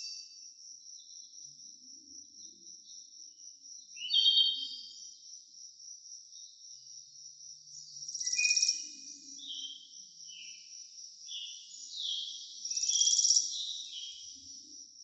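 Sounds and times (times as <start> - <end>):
crickets trilling: 0.0 - 15.0.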